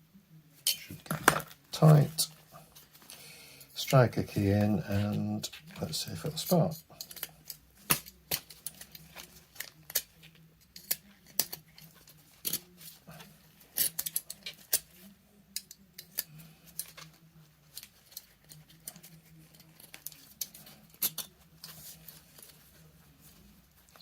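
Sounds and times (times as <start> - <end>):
metallic clicks and scrapes: 6.3 - 24.0.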